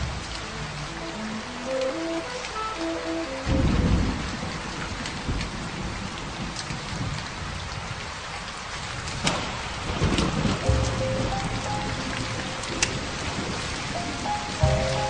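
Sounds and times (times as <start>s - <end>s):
rain falling: 0.0s - 15.0s
low rumble of thunder: 3.4s - 15.0s.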